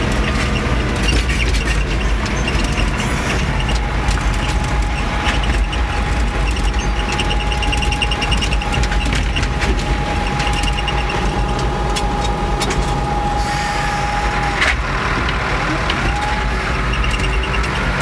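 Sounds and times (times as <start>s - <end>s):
tractor engine rumbling: 0.0s - 18.0s
steady whistle: 6.6s - 14.7s.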